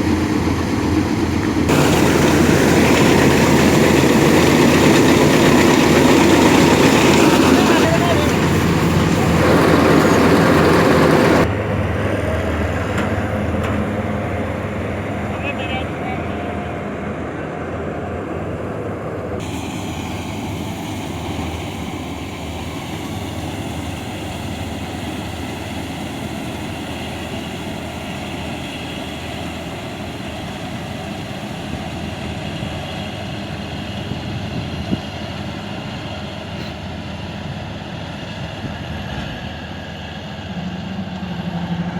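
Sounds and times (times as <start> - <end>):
combine harvester running: 0.0 - 41.9.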